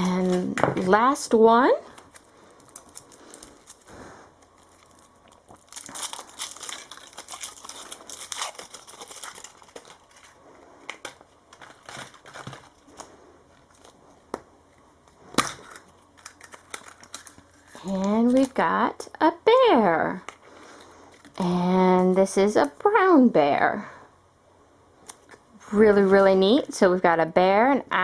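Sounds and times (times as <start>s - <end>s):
wrapper crinkling and tearing: 1.9s - 14.0s, 15.4s - 18.6s.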